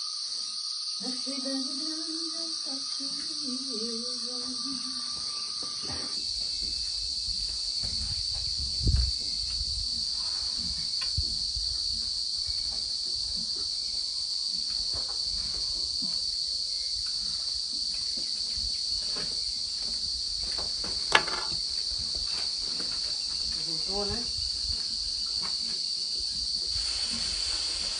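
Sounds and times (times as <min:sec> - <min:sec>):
crickets chirping: 0:00.0 - 0:27.9.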